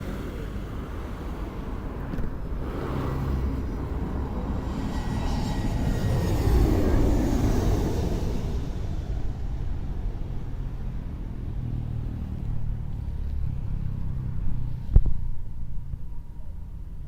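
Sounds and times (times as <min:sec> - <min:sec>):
jet engines rumbling: 0:00.0 - 0:12.8.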